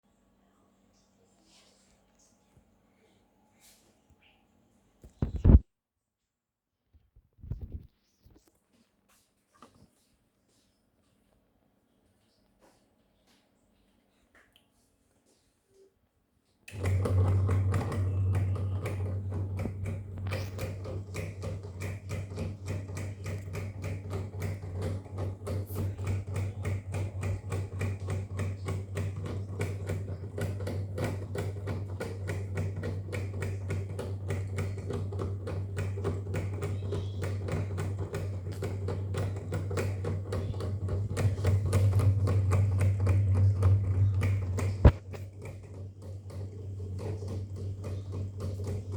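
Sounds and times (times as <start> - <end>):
ceiling fan switching on: 16.7 - 48.9
fan motor hum: 16.7 - 48.9.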